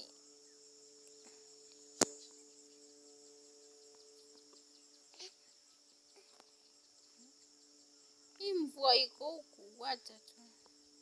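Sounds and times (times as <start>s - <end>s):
insects trilling: 0.0s - 11.0s
sharp click: 1.0s - 2.4s.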